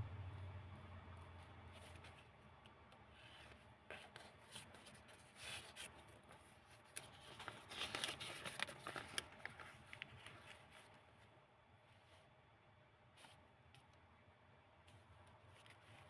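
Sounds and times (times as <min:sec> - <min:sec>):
paper pages rustling: 0:03.0 - 0:11.2.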